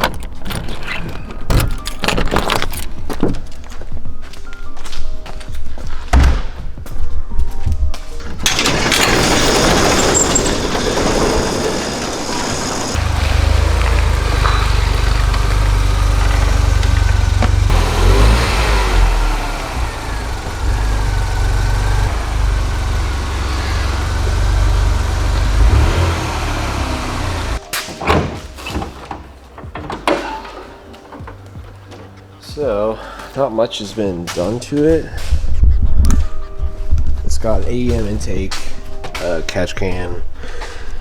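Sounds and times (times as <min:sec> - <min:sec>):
road noise: 0:09.0 - 0:27.7
car engine rumble: 0:09.4 - 0:27.6
turbo whine: 0:11.9 - 0:27.6.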